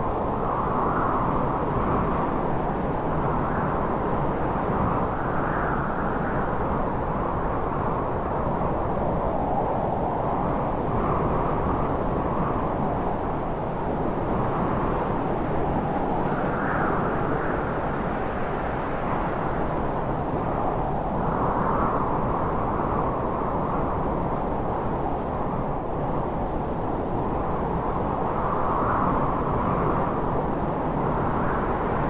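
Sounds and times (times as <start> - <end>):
rushing wind gusts: 0.0 - 32.0.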